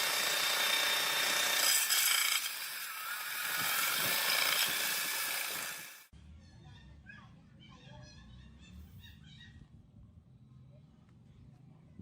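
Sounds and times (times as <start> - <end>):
power tool grinding metal: 0.0 - 6.1.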